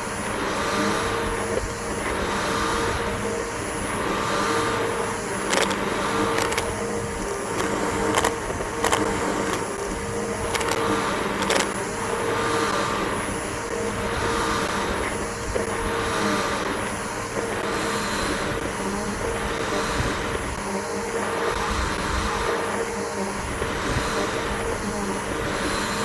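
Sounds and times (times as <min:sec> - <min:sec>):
vacuum cleaner motor whining: 0:02.2 - 0:11.7
sharp clicks: 0:05.4 - 0:11.8.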